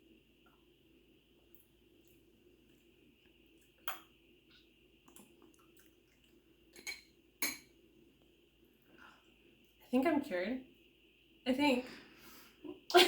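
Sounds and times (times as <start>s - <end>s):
faint steady hum: 0.0s - 13.0s
spoon clinking against a dish: 6.8s - 7.7s.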